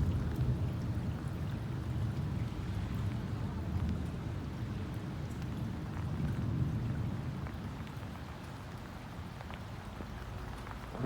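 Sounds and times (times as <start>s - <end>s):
rain falling: 5.0s - 11.0s.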